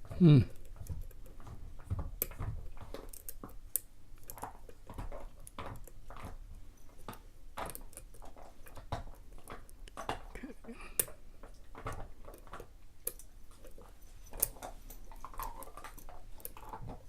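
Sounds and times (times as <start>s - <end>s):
lock pick scraping and clicking: 2.2s - 6.0s, 11.8s - 16.8s.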